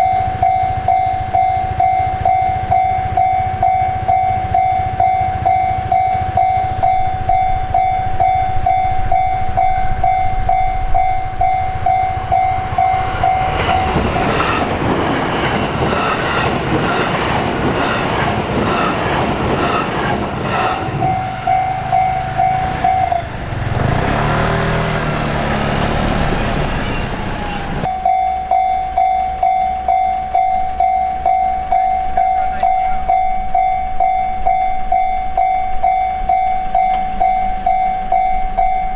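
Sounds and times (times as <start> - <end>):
level crossing alarm bell ringing: 0.0 - 14.5, 20.8 - 38.9
train wheels clattering over rails: 11.0 - 27.9.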